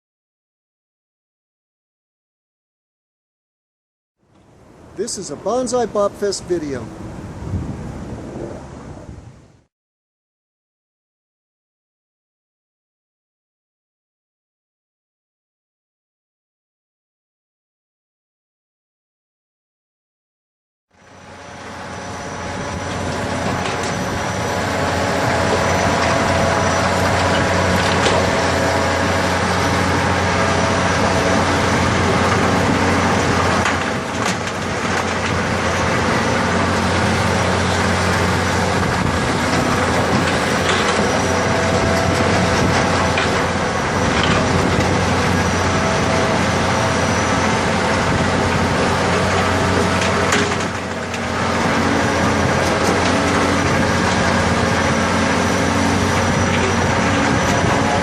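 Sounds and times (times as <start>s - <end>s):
digging machine engine drone: 4.3s - 9.0s, 20.9s - 58.0s.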